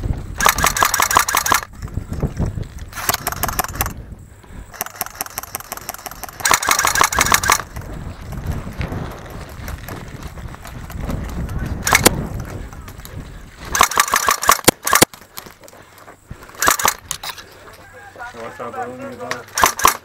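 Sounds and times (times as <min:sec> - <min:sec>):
airsoft rifle firing bursts: 0:00.4 - 0:01.8, 0:02.9 - 0:04.0, 0:04.8 - 0:07.8, 0:11.8 - 0:12.2, 0:13.7 - 0:15.2, 0:16.6 - 0:17.1, 0:19.5 - 0:20.0.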